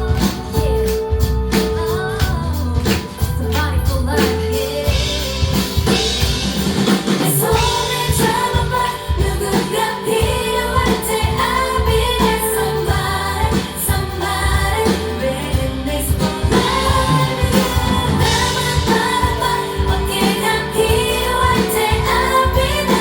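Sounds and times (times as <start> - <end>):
amplified band accompaniment: 0.0 - 23.0
women singing pop song: 0.0 - 23.0.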